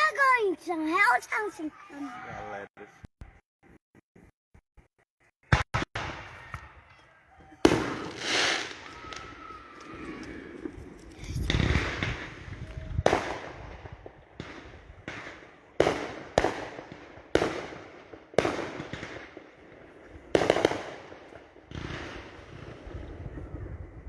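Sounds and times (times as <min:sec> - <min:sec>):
fireworks exploding: 0:07.6 - 0:24.0.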